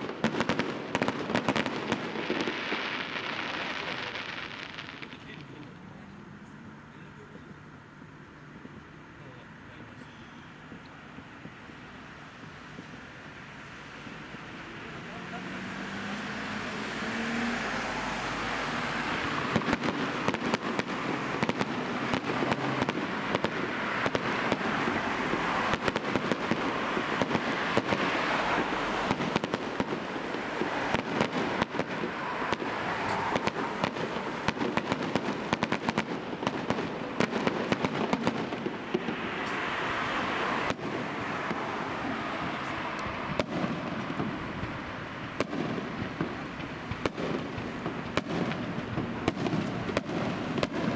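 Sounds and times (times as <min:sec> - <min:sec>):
fireworks crackling: 0:00.0 - 0:50.9
rushing hiss of fireworks: 0:00.0 - 0:50.9.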